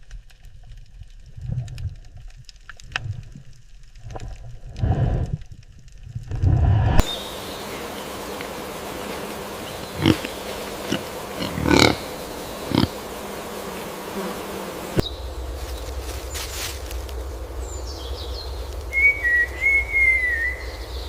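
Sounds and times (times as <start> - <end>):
steady outdoor hiss: 6.4 - 21.0
short animal calls: 9.7 - 13.0.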